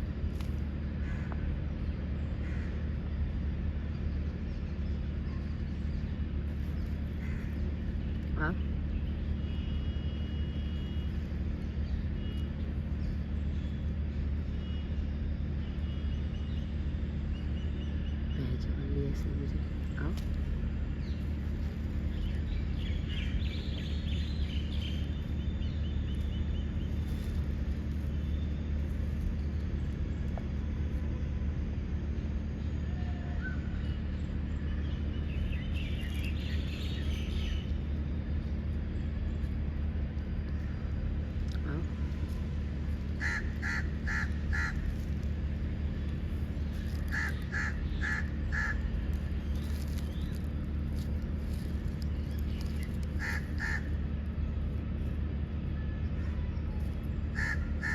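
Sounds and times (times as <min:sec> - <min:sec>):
steady low hum: 0:00.0 - 0:57.9
steady low rumble: 0:00.0 - 0:57.9
small birds chirping: 0:00.1 - 0:31.4, 0:32.0 - 0:54.8
bird calling: 0:43.0 - 0:50.4, 0:52.2 - 0:54.0, 0:57.3 - 0:57.9.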